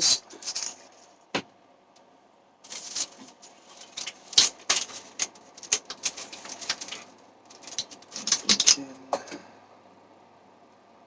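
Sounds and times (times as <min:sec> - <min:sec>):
small items clicking and clattering: 0:00.0 - 0:01.1, 0:02.7 - 0:09.4.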